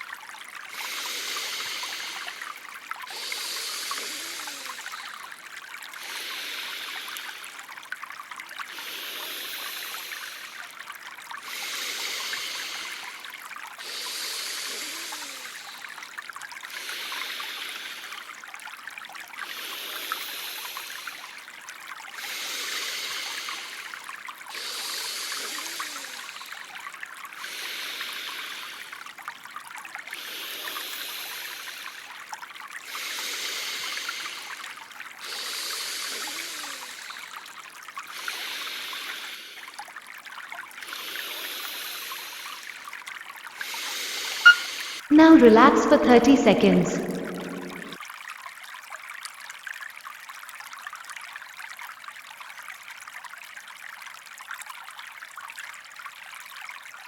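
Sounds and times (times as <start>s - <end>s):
hissing breaths in and out: 0.7s - 7.9s, 8.6s - 18.4s, 19.4s - 21.5s, 22.1s - 39.9s, 40.8s - 42.9s, 43.5s - 45.1s.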